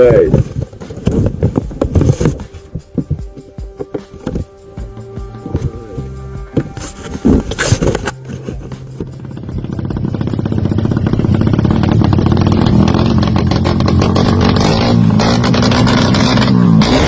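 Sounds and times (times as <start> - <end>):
motorcycle engine revving high: 8.1 - 17.0.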